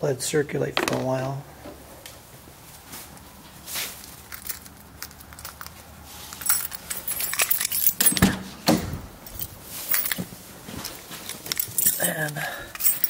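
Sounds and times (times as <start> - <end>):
keys jangling: 4.0 - 8.4, 9.2 - 13.0.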